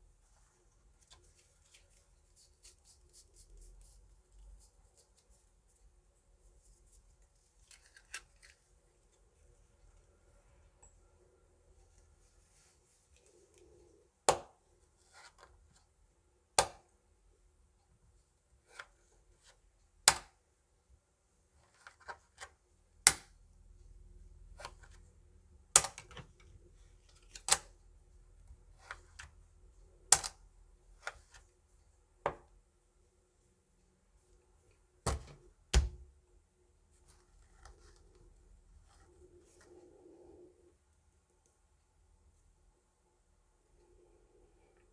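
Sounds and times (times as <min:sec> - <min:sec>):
cards clicking and rustling: 0:07.6 - 0:08.7.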